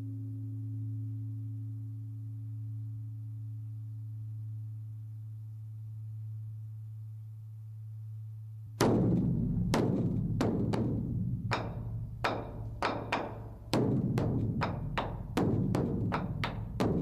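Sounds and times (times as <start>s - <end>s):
steady low hum: 0.0s - 17.0s
temple percussion struck with sticks: 8.8s - 17.0s.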